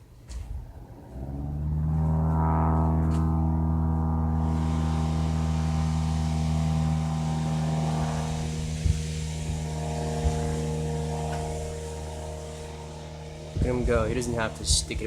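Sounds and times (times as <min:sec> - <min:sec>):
propeller plane droning overhead: 0:00.0 - 0:15.0.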